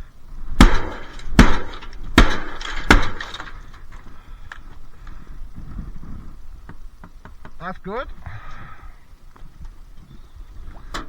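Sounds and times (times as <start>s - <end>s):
hammer striking dishwasher: 0.6s - 3.4s.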